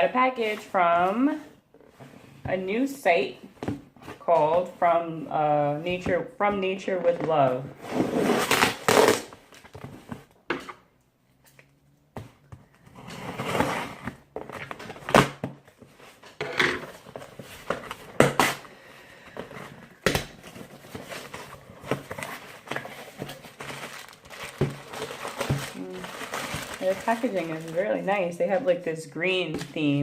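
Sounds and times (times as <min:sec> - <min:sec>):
packaging rustling and scraping: 0:12.4 - 0:18.6, 0:19.2 - 0:28.8.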